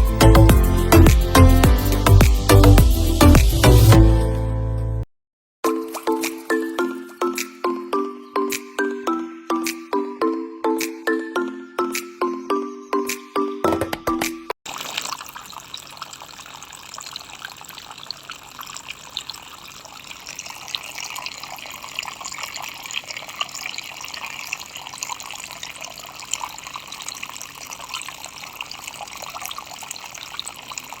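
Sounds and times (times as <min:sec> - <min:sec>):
water trickling and splashing: 0:05.6 - 0:08.2, 0:14.6 - 0:31.0.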